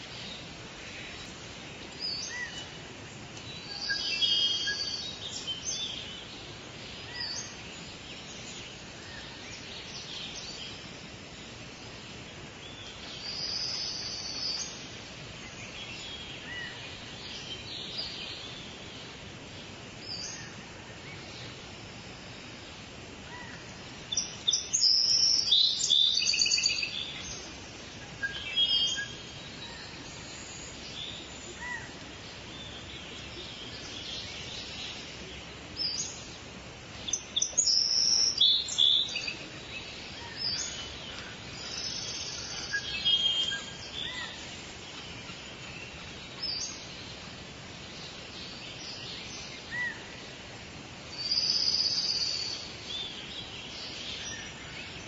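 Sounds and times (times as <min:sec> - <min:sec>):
background hiss: 0:00.0 - 0:55.0
songbirds trilling and chirping: 0:00.0 - 0:55.0.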